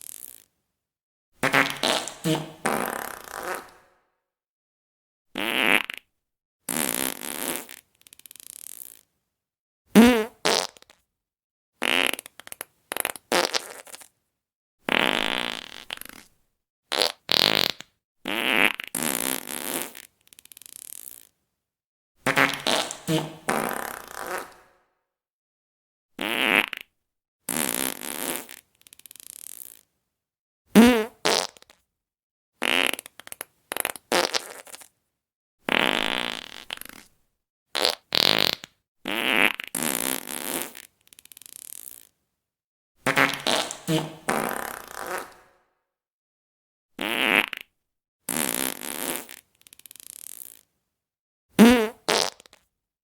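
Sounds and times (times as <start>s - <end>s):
fart sounds: 0.0s - 0.5s, 1.4s - 4.0s, 5.4s - 6.1s, 6.7s - 9.0s, 10.0s - 11.0s, 11.8s - 14.1s, 14.9s - 16.3s, 16.9s - 21.3s, 22.3s - 24.9s, 26.2s - 26.9s, 27.5s - 29.9s, 30.8s - 31.8s, 32.6s - 34.9s, 35.7s - 37.1s, 37.8s - 42.1s, 43.1s - 45.7s, 47.0s - 47.7s, 48.3s - 50.7s, 51.6s - 52.7s.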